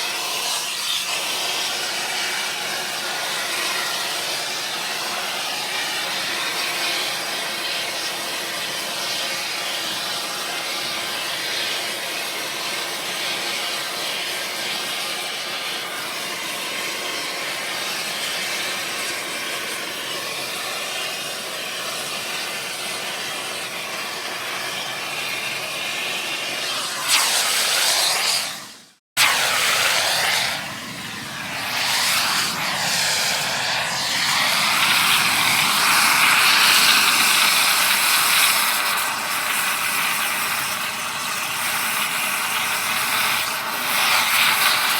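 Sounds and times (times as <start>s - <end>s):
air torch hissing: 12.7s - 44.9s.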